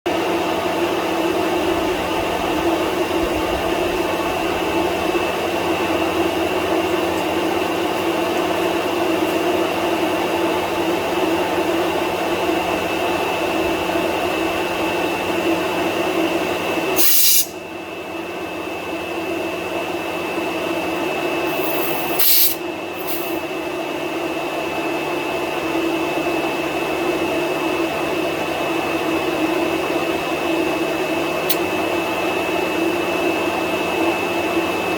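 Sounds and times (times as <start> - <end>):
radiator cooling fans running: 0.1 - 34.9
compressed air hiss: 17.0 - 17.6, 21.5 - 23.4.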